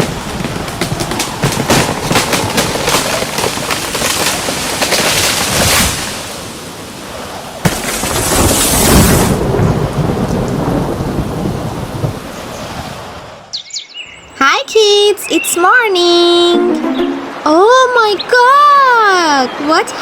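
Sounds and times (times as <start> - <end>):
heavy rain: 0.0 - 13.5
thunder crack and rumble: 7.6 - 12.9.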